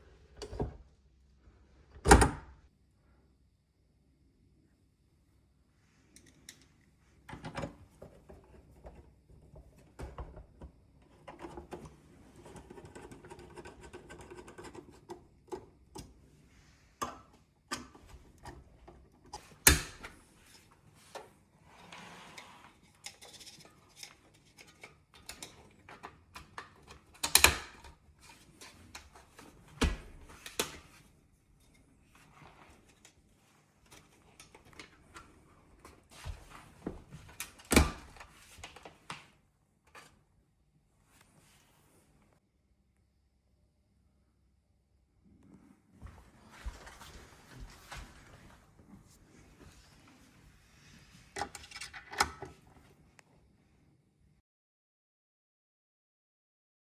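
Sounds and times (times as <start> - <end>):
clicks and rustling of handling: 22.7 - 40.2.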